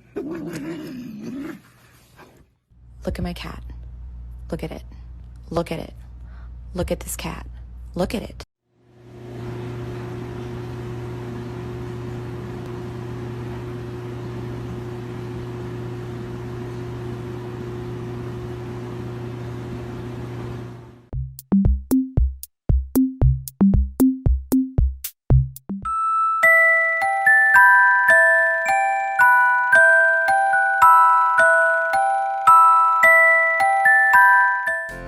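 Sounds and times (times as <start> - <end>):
drum machine beat: 21.1 - 25.9.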